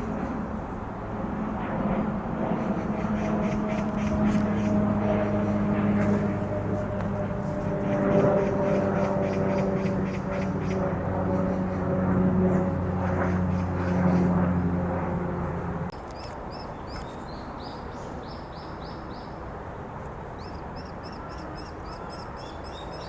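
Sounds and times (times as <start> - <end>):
engine droning: 0.0 - 16.2.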